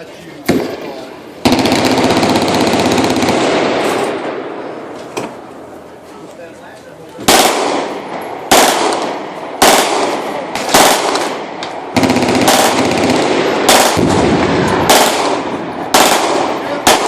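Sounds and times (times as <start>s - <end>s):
heavy gunshots with rolling echo: 0.4s - 5.7s, 7.2s - 17.0s
rapid automatic gunfire: 1.4s - 4.0s, 7.3s - 7.9s, 8.5s - 17.0s.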